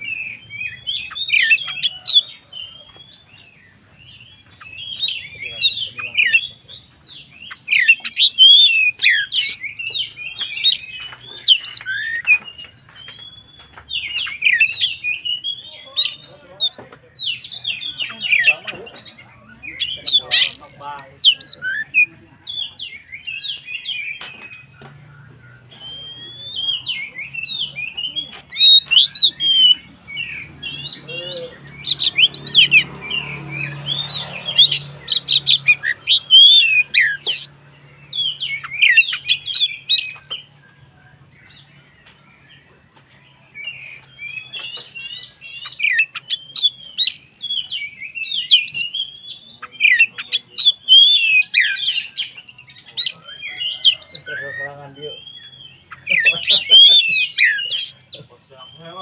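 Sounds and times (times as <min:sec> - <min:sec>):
songbird whistling and chattering: 0:00.0 - 0:59.0.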